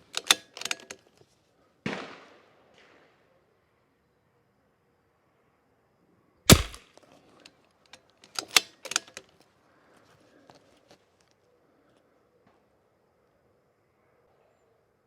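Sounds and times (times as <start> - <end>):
rifle bolt metallic clicks: 0.1 - 1.0, 6.5 - 6.8, 8.2 - 9.3
rifle shot: 6.5 - 6.8.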